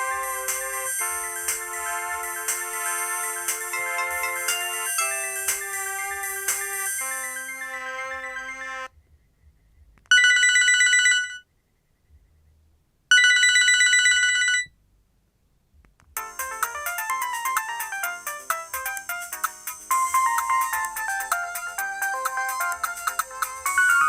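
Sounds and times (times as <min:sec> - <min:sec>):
fast ringtone melody: 0:00.0 - 0:08.9, 0:16.2 - 0:24.0
held ringtone chord: 0:00.0 - 0:08.9, 0:16.2 - 0:24.0.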